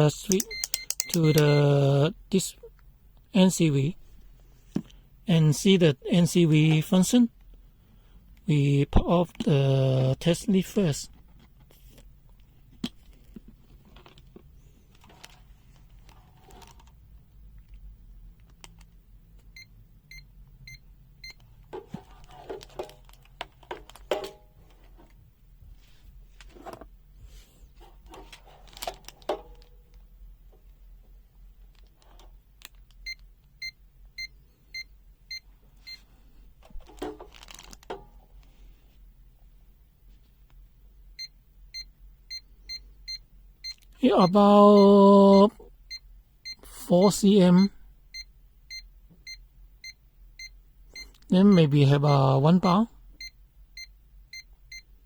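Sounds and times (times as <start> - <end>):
meter and leads rattling: 0.1 - 1.8
short high beeps: 0.3 - 1.6.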